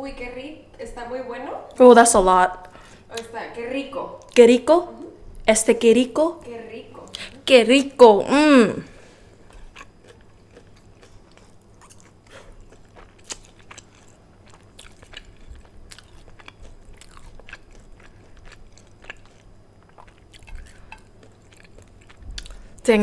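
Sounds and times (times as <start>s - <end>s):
person chewing food: 8.9s - 22.9s.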